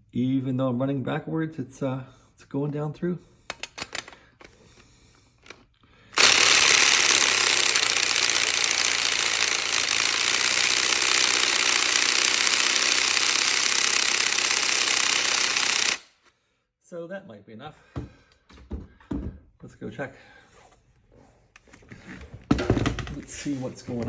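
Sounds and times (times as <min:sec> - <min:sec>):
cordless drill boring into metal: 0:06.2 - 0:16.1.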